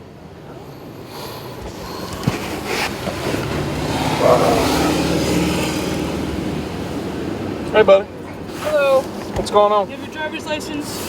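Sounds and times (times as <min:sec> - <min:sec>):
vehicle passing by: 0:01.1 - 0:09.2.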